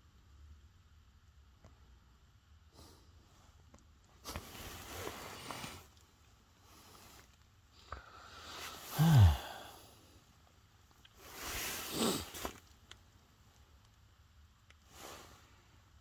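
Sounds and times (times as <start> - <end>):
long breath out: 7.8 - 10.1
person sighing: 8.0 - 10.0.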